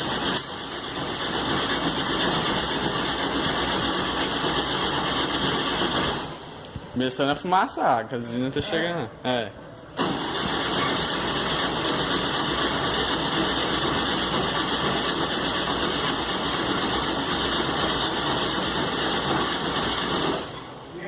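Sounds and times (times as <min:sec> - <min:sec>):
car engine cranking on starter: 0:10.0 - 0:20.5.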